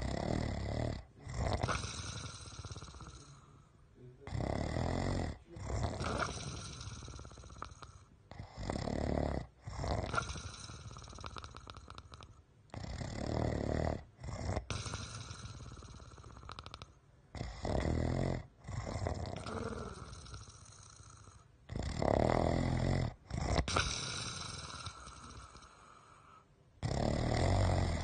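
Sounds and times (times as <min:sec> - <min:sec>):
quiet breathing: 0:00.0 - 0:08.8, 0:18.4 - 0:21.7, 0:23.1 - 0:26.6
heavy snoring: 0:00.0 - 0:28.0.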